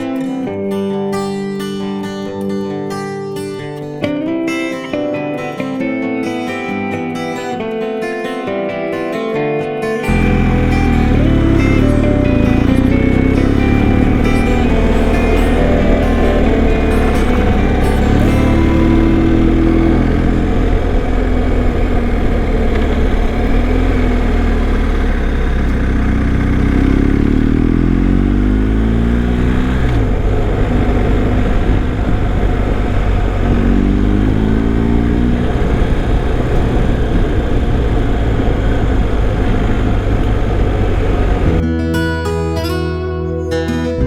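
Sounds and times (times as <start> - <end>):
motorcycle engine running: 10.1 - 41.6
wind and road noise: 10.1 - 41.6.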